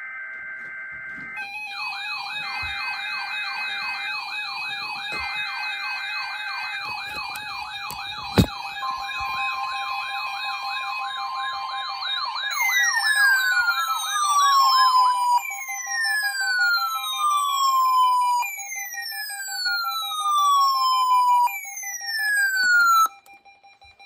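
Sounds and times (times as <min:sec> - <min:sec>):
weather radio alarm warbling: 0:00.4 - 0:18.5.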